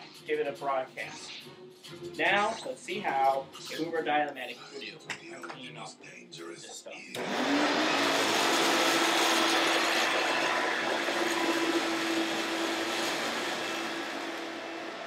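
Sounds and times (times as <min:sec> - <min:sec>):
upright vacuum cleaner running: 0:07.2 - 0:15.0.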